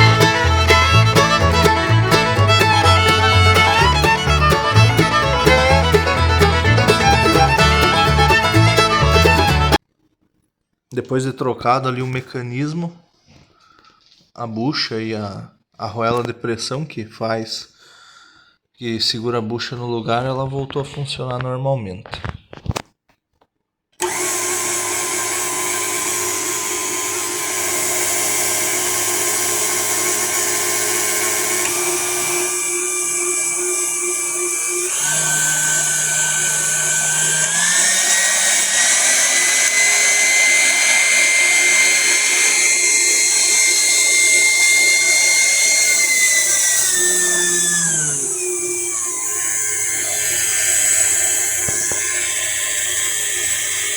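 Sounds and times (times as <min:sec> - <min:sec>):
stand mixer motor whine: 0:00.0 - 0:09.8, 0:24.0 - 0:53.9.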